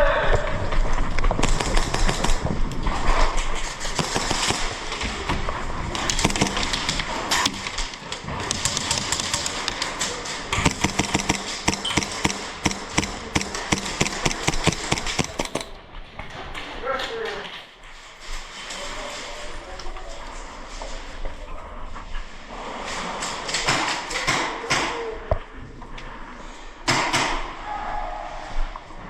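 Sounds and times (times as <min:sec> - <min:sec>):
gear and footsteps moving: 0:01.2 - 0:02.8, 0:03.6 - 0:05.5, 0:06.1 - 0:15.8
airsoft guns firing: 0:01.4 - 0:15.8.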